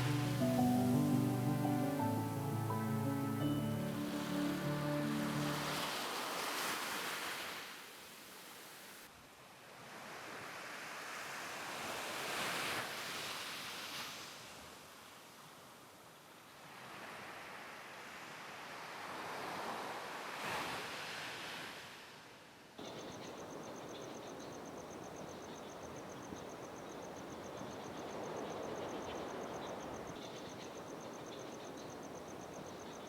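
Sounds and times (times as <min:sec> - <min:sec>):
surf washing in: 0:00.0 - 0:08.9.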